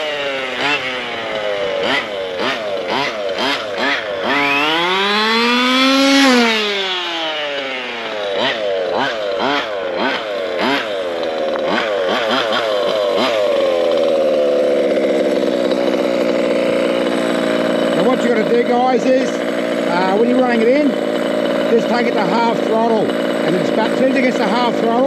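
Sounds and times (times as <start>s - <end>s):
two-stroke model engine revving: 0.0s - 25.0s.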